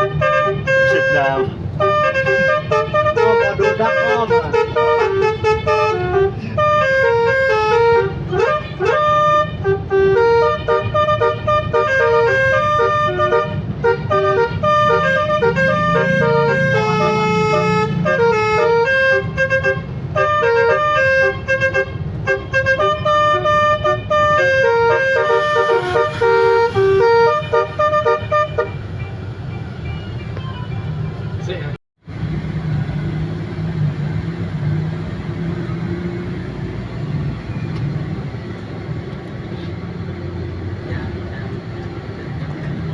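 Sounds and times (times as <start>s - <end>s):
multi-tone bus horn tune: 0.0s - 31.7s
bus engine rumble: 0.0s - 42.9s.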